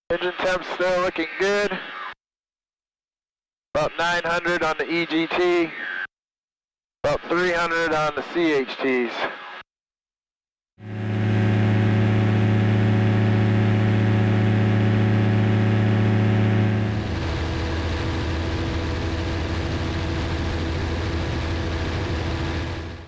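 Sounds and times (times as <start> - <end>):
aircraft engine running: 10.8 - 23.0.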